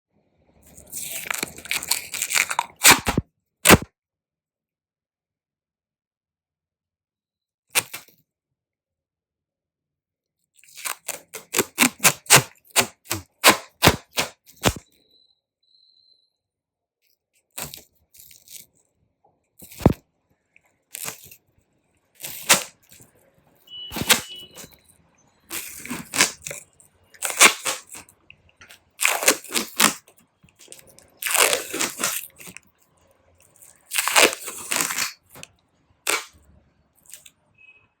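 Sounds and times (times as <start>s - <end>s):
duct tape ripping: 0.7s - 3.9s, 7.7s - 8.1s, 10.6s - 14.8s, 17.5s - 18.7s, 19.6s - 20.0s, 20.9s - 21.4s, 22.2s - 23.1s, 23.9s - 24.7s, 25.5s - 26.6s, 27.2s - 28.1s, 29.0s - 32.6s, 33.5s - 36.4s.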